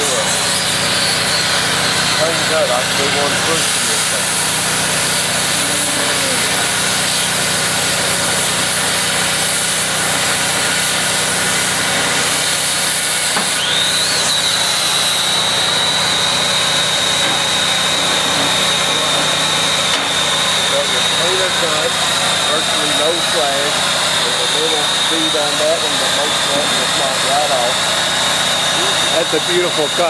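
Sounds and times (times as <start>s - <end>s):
thin high whistle: 0.0s - 2.3s, 13.1s - 17.7s
cutting torch hissing: 0.0s - 30.0s.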